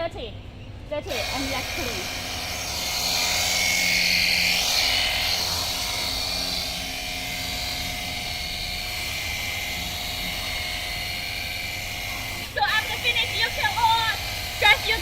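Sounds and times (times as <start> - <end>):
pump motor droning: 1.1 - 15.0.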